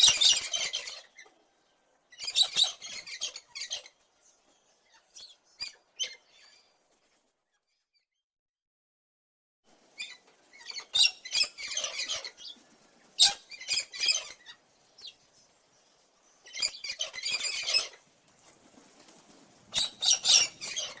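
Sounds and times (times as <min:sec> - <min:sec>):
cockatoo harsh calls: 0:10.0 - 0:12.6, 0:13.2 - 0:14.6, 0:16.5 - 0:18.0, 0:19.7 - 0:21.0.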